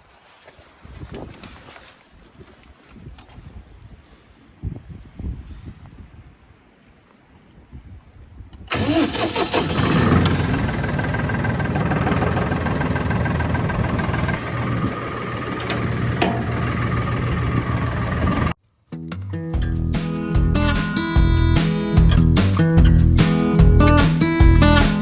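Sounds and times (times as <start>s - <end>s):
engine starting and idling: 8.7s - 18.6s.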